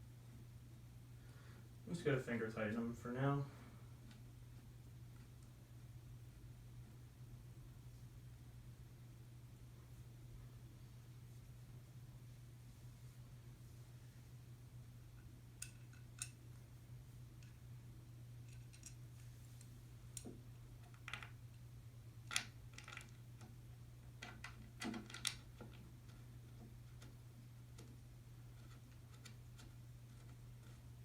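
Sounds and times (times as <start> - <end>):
faint low hum: 0.0 - 31.0.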